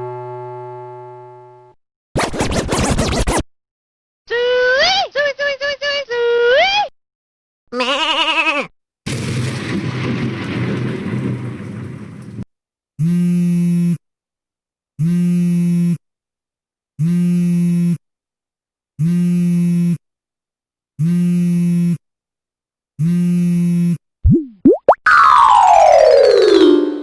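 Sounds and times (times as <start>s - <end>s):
rumbling explosion: 9.1s - 12.5s
buzzer tone: 13.0s - 14.0s, 15.0s - 16.0s, 17.0s - 18.0s, 19.0s - 20.0s, 21.0s - 22.0s, 23.0s - 24.0s.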